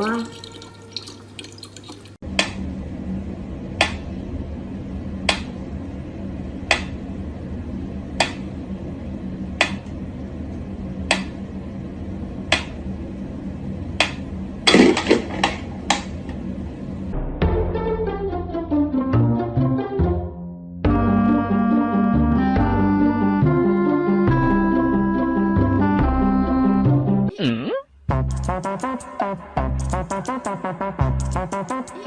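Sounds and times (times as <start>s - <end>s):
steady low hum: 2.2s - 18.7s.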